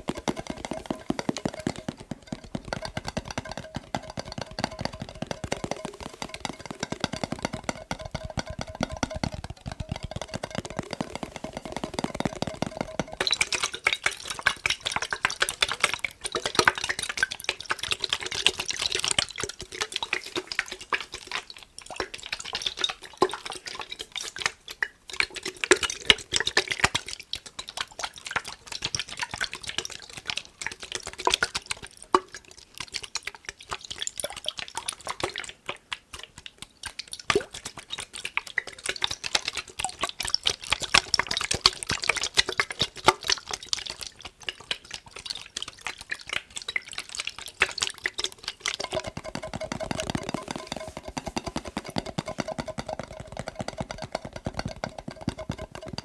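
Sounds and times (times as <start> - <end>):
tapping on glass jar: 0.0 - 24.4, 47.6 - 56.0
water sloshing in glass: 0.0 - 32.6, 37.0 - 56.0.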